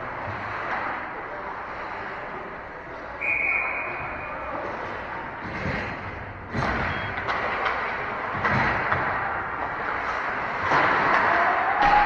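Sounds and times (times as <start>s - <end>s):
rink crowd noise: 0.0s - 12.0s
referee whistle blast: 3.2s - 4.0s.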